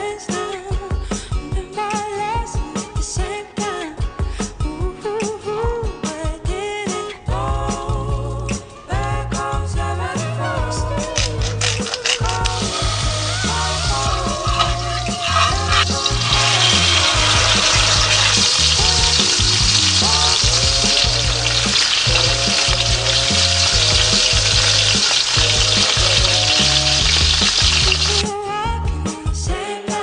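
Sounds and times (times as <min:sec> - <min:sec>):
background music with steady beat: 0:00.0 - 0:30.0
fish sizzling in hot oil: 0:11.2 - 0:28.2.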